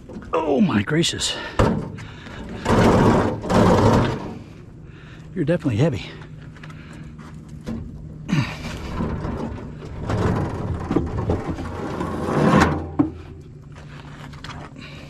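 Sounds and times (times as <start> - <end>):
heavy object scraping on hard surface: 11.5 - 13.3.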